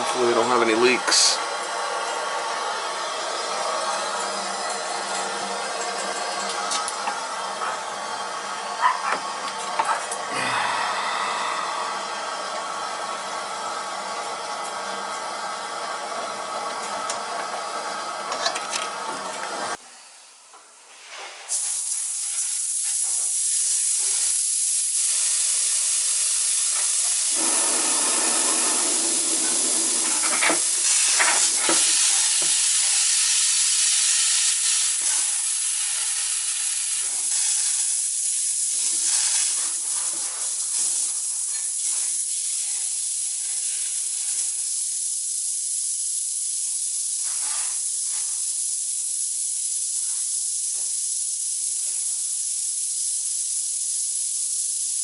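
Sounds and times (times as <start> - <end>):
steady mechanical hum: 0.0 - 21.0
air hissing from valve: 10.2 - 13.8, 20.9 - 55.0.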